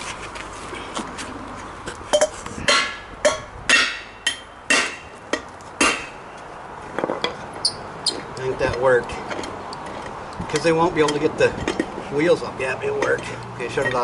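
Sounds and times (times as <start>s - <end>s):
hammer striking steel: 2.2s - 6.2s.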